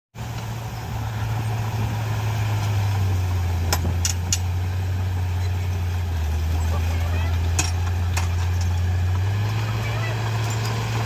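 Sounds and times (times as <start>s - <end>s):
bulldozer diesel engine drone: 0.1s - 11.0s
metallic clanks: 3.6s - 4.6s, 5.3s - 11.0s.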